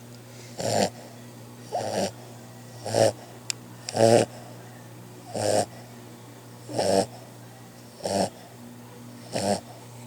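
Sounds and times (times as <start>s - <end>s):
puppy snoring: 0.6s - 2.2s, 2.8s - 3.3s, 3.9s - 4.5s, 5.2s - 5.8s, 6.6s - 7.3s, 7.9s - 8.5s, 9.2s - 9.8s.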